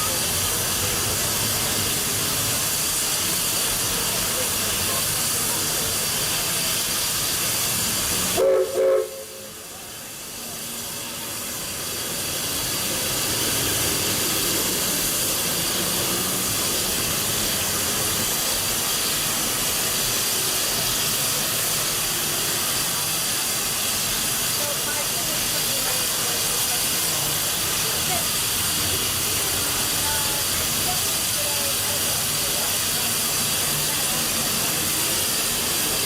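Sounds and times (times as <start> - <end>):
steam locomotive hissing: 0.0 - 36.0
steam whistle toots: 8.3 - 9.7.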